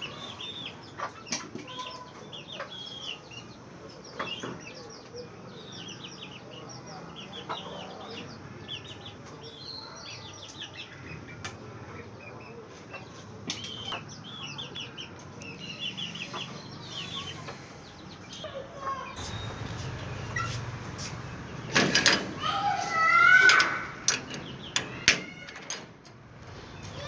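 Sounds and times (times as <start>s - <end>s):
chicks peeping: 0.0s - 21.8s, 22.4s - 24.8s
chickens clucking: 0.0s - 24.8s.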